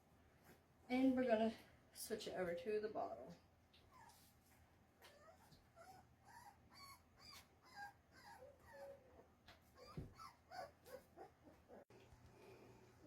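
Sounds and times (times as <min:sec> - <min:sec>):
puppy whimpering: 0:05.0 - 0:11.9.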